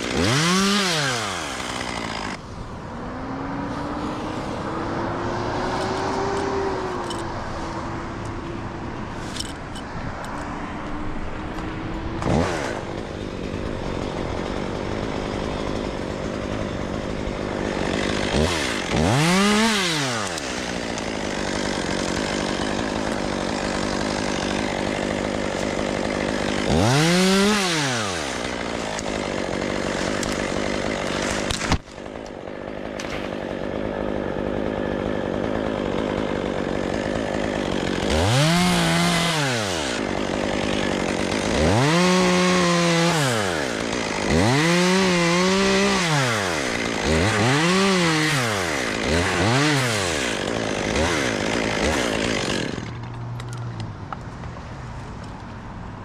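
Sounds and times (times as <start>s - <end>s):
chainsaw idling and revving: 0.0s - 54.2s.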